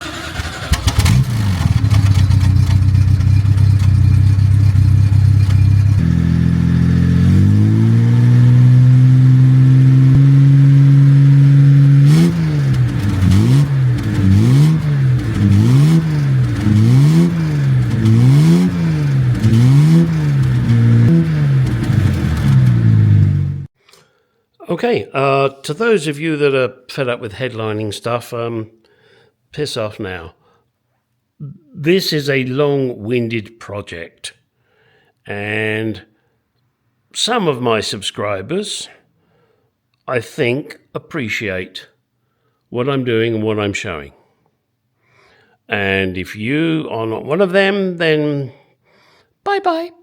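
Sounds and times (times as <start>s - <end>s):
car engine idling and revving: 0.0s - 23.7s.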